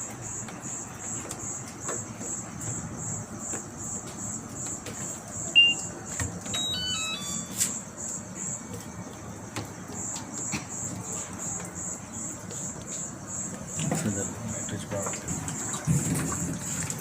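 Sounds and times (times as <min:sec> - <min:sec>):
washing machine beep: 0:05.4 - 0:08.5
quick high chirp: 0:05.6 - 0:05.9
falling electronic tones: 0:05.6 - 0:07.8.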